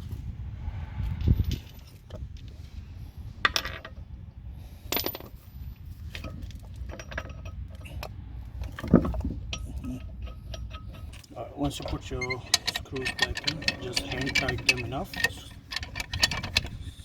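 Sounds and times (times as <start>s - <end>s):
metal bolts clinking and rattling: 3.4s - 4.0s, 4.9s - 16.9s.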